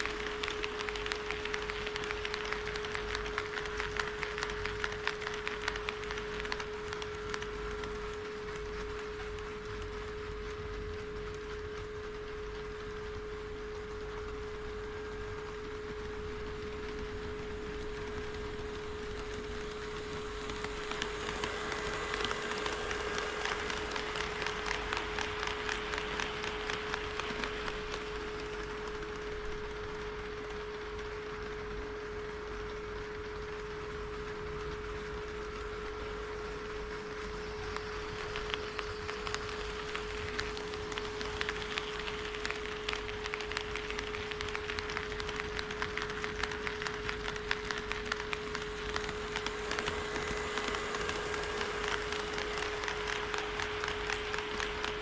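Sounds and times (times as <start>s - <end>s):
model train wheels clicking: 0.0s - 55.0s
steady hum and low rumble: 0.0s - 55.0s
high-pitched hum: 48.2s - 55.0s.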